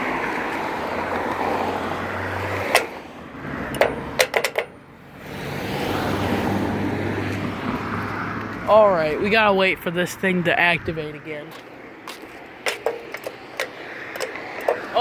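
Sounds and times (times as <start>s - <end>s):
road traffic noise: 0.0s - 15.0s.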